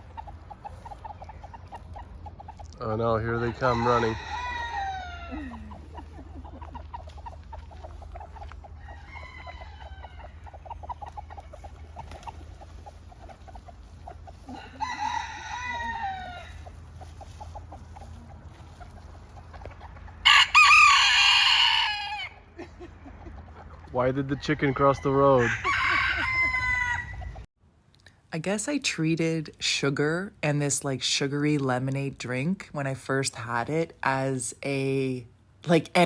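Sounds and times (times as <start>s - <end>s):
chickens clucking: 0.0s - 27.5s
rooster crowing: 3.4s - 5.7s, 8.8s - 10.6s, 14.5s - 16.6s, 20.2s - 22.4s, 24.4s - 27.4s.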